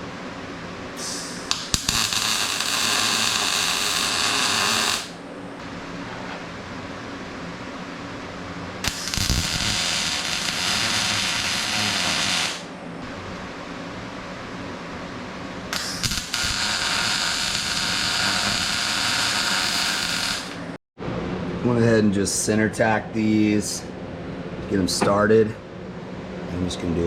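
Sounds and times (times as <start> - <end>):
steady low hum: 0.0 - 27.0
crackling welding arc: 1.0 - 5.2, 8.8 - 12.7, 15.7 - 20.7.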